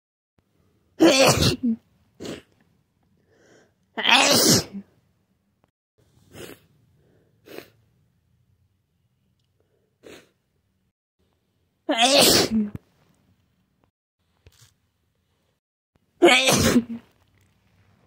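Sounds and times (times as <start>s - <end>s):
person sneezing hard: 1.0s - 2.5s, 4.0s - 4.9s, 11.9s - 12.8s, 16.2s - 17.0s.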